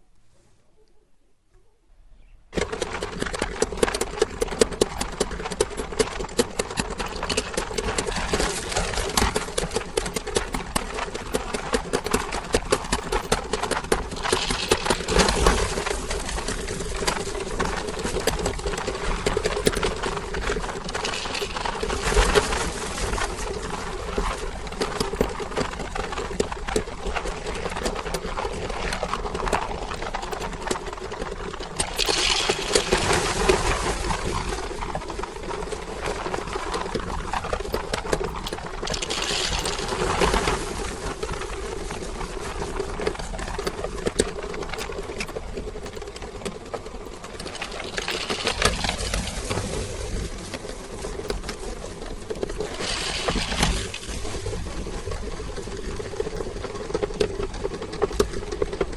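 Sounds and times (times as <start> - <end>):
candy crackling and crunching: 12.8 - 17.0, 18.6 - 24.4, 29.5 - 34.4, 36.2 - 40.7, 47.0 - 50.1, 52.5 - 54.5.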